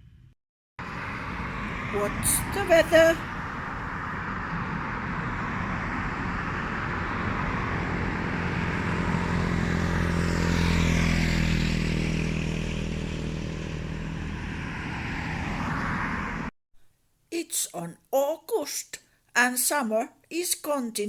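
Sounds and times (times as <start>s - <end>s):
motor engine passing by: 0.8s - 16.5s.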